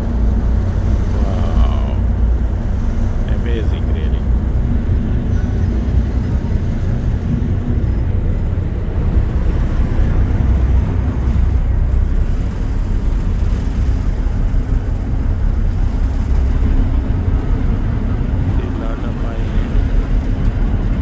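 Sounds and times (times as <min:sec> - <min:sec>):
ferry engines rumbling: 0:00.0 - 0:21.0.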